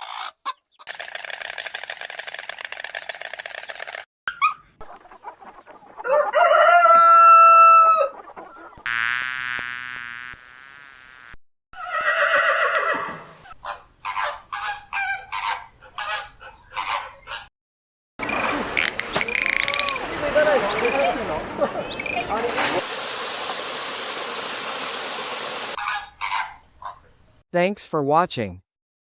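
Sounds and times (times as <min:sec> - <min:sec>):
chicken clucking: 0:04.3 - 0:08.8, 0:13.5 - 0:17.5, 0:25.8 - 0:27.2
rooster crowing: 0:06.0 - 0:08.2.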